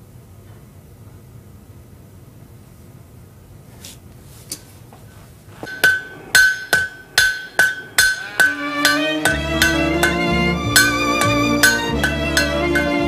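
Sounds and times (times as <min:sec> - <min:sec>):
hammer striking an anvil: 0:05.6 - 0:13.0
folk music with fiddle: 0:08.2 - 0:13.0.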